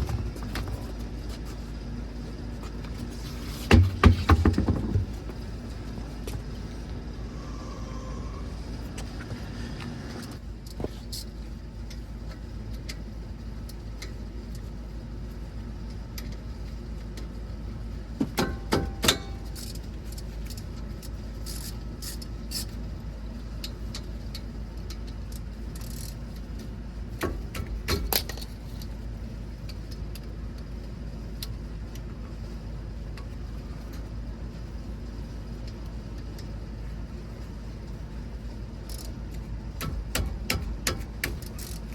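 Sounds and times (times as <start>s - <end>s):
steady low hum: 0.0s - 41.9s.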